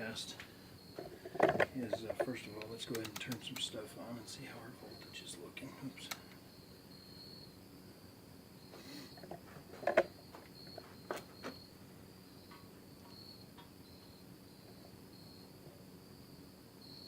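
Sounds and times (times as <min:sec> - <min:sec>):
faint high-pitched chirping: 0:00.0 - 0:07.6, 0:10.1 - 0:15.6, 0:16.2 - 0:17.0
equipment clicks and knocks: 0:01.0 - 0:02.3.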